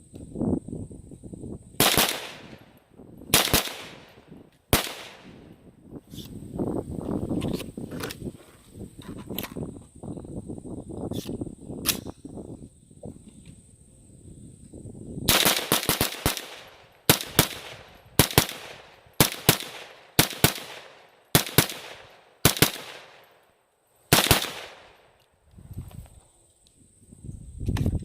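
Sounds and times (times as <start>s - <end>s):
rifle shots with ringing tail: 1.8s - 2.7s, 3.3s - 5.5s, 15.3s - 23.4s, 24.1s - 25.1s.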